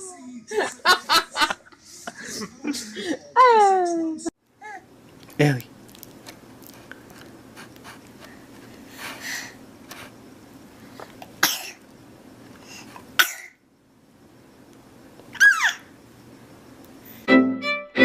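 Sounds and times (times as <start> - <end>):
baby sneezing: 15.4 - 15.8.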